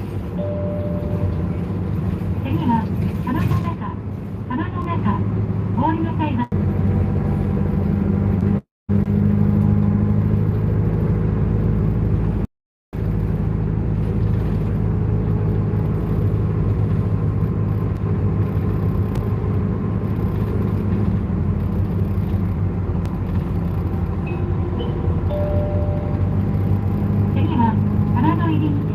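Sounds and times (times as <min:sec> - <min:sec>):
bus engine drone: 0:00.0 - 0:28.9
road noise: 0:00.0 - 0:28.9.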